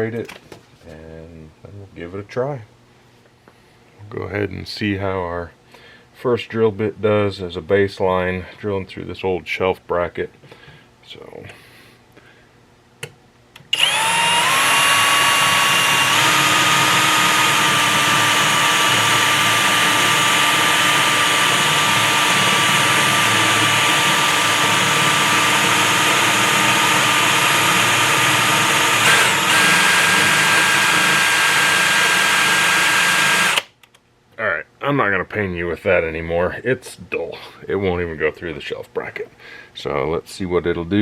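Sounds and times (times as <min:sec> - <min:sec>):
power drill whining: 0:13.7 - 0:33.7.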